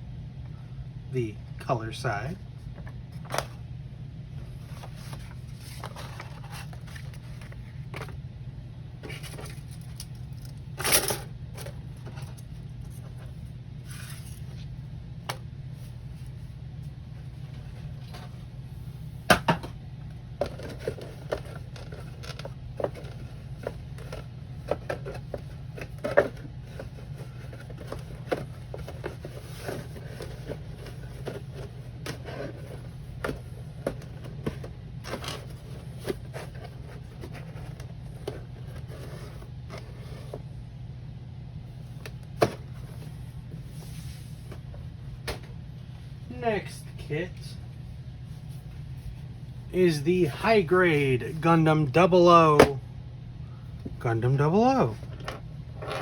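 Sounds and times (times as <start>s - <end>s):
steady low hum: 0.0s - 56.0s
paper and plastic rustling: 4.5s - 8.2s, 20.4s - 40.4s.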